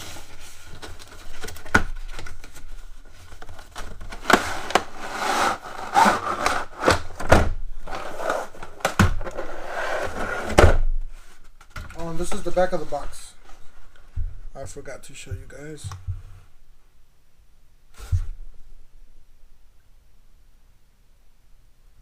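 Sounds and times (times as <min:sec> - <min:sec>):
cardboard packaging rustling and scraping: 0:00.0 - 0:07.2, 0:07.8 - 0:13.9.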